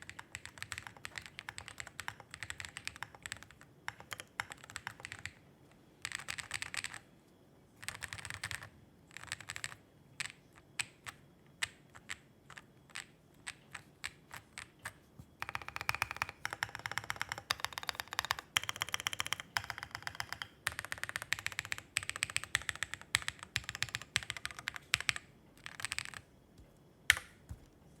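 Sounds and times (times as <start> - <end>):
mechanical keyboard typing: 0.0 - 5.4, 6.0 - 7.0, 7.8 - 26.3, 27.1 - 27.6.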